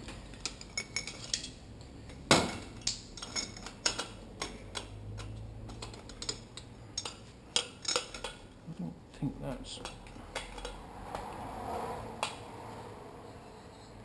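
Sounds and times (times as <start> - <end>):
metal parts clinking and knocking: 0.0 - 8.5.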